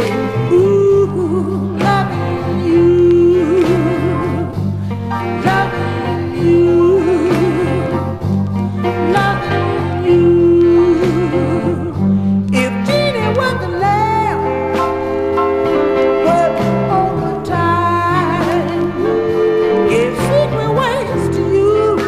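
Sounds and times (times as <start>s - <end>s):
steady bass line: 0.0s - 22.0s
singer holding vibrato notes: 8.8s - 22.0s.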